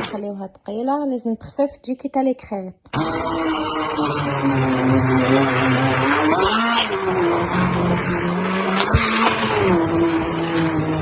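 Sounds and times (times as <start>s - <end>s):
electric kitchen mixer running: 2.9s - 11.0s.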